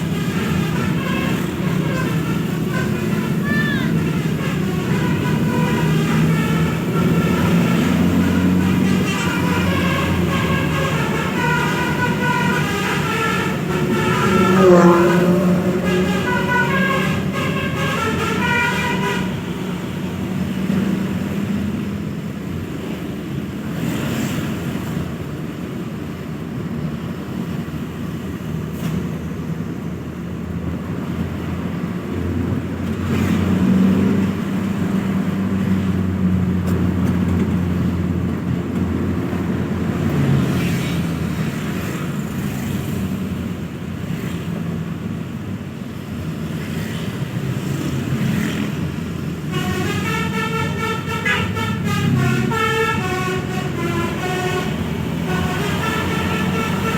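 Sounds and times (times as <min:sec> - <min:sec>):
bus musical horn melody: 0:00.0 - 0:21.8, 0:48.2 - 0:56.9
bus engine running: 0:00.0 - 0:56.9
road traffic noise: 0:00.0 - 0:56.9.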